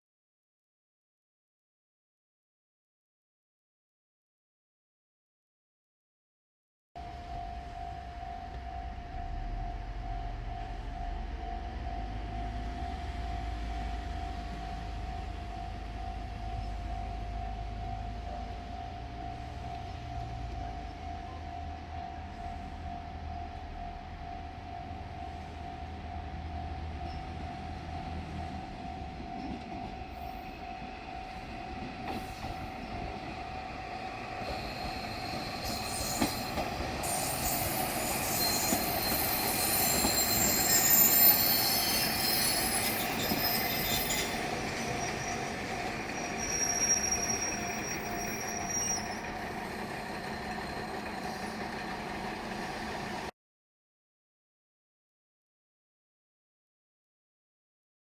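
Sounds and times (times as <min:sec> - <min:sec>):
diesel railcar rumble: 0:07.0 - 0:53.3
train wheels squealing: 0:25.9 - 0:53.3.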